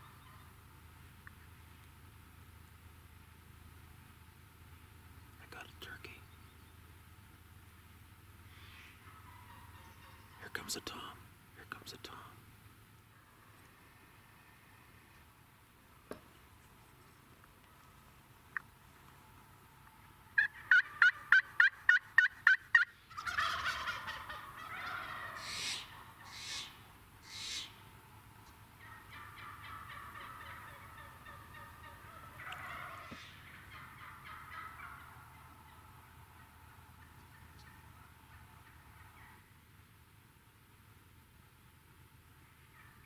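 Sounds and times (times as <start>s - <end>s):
turkey yelps: 8.5s - 10.4s, 20.4s - 27.8s, 28.8s - 39.5s, 42.4s - 43.0s
turkey gobbling: 8.5s - 10.5s, 19.9s - 39.5s, 42.4s - 43.0s
faint rattling calls: 23.0s - 39.5s.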